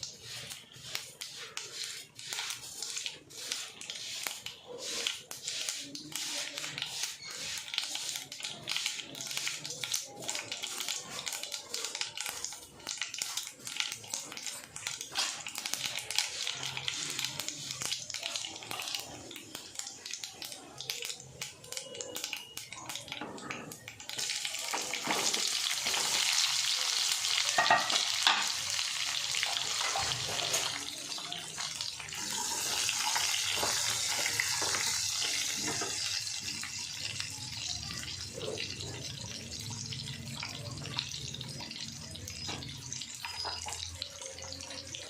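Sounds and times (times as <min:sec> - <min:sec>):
stirring scrapes and clicks: 0:00.0 - 0:26.2, 0:29.3 - 0:37.3
food sizzling in hot oil: 0:00.0 - 0:45.0.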